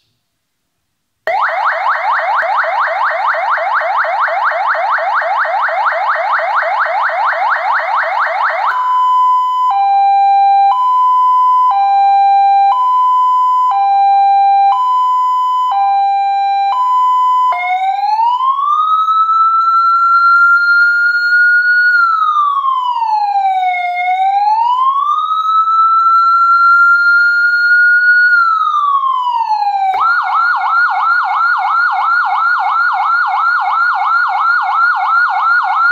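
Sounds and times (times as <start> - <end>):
siren wail: 1.3 - 35.9
siren yelp: 1.3 - 35.9
two-note hi-lo siren: 29.7 - 35.9.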